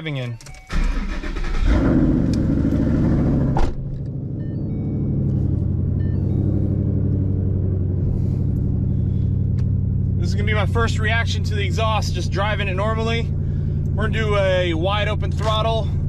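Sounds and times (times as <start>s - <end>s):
car engine revving then idling: 1.0s - 16.0s.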